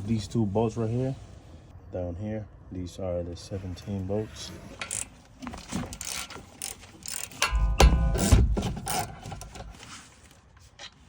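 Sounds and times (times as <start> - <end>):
ratchet wrench clicking: 5.9 - 9.5.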